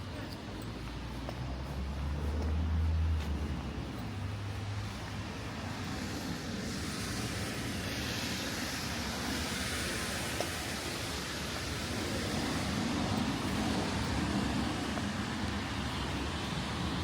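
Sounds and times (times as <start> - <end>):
car tyres on wet street: 0.0 - 17.0
rain hiss: 4.6 - 17.0.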